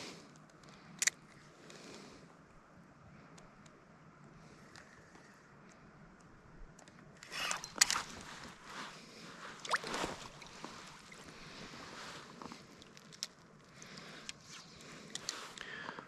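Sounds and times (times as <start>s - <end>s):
paddle splashing water: 9.5s - 11.4s.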